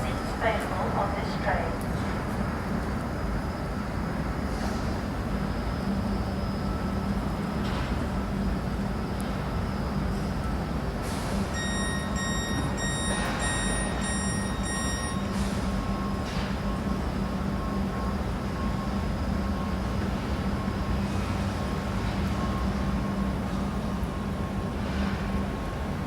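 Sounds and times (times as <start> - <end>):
electric train humming: 5.2 - 26.0
train door warning beeps: 9.3 - 25.9.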